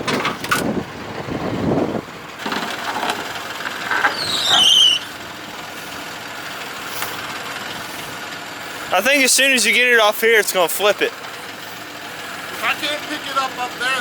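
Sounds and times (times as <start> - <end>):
tractor engine under load: 0.0 - 14.0
high falling squeal: 3.9 - 5.2.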